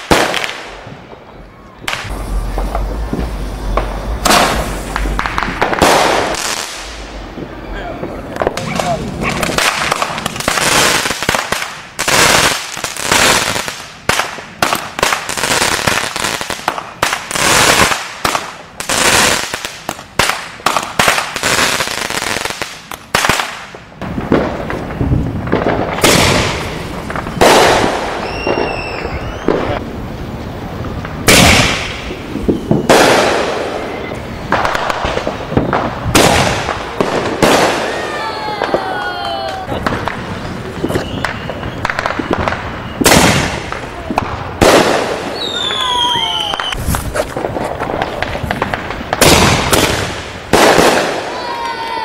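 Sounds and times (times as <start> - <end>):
fireworks bangs: 0.0 - 52.0
firework whistle: 1.2 - 11.2, 26.0 - 29.9, 31.3 - 43.8, 44.6 - 47.3.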